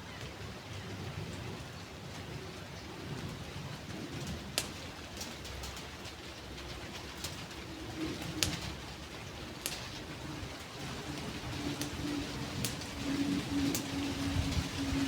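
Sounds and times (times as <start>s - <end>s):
background hiss: 4.6s - 15.0s
dove cooing: 7.4s - 15.0s
sharp ticks: 9.6s - 9.8s, 11.1s - 15.0s.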